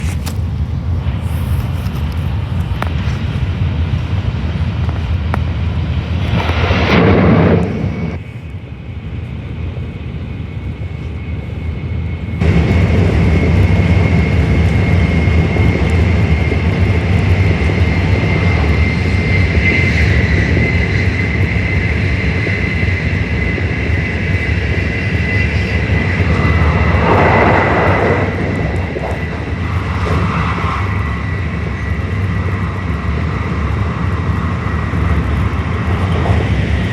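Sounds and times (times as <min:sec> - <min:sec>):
train rumble inside carriage: 0:00.0 - 0:36.9.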